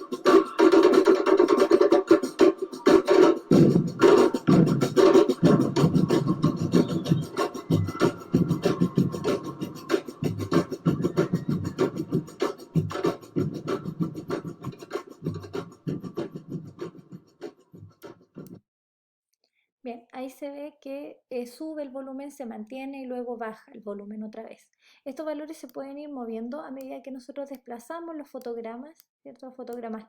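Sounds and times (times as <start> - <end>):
music with steady beat: 0.0 - 18.6.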